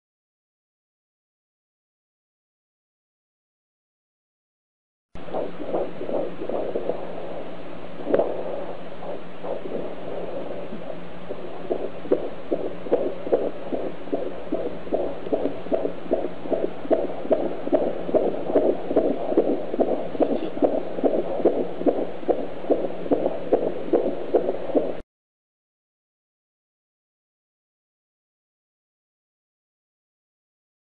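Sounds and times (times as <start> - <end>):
fetal heartbeat on doppler speaker: 5.2 - 25.0.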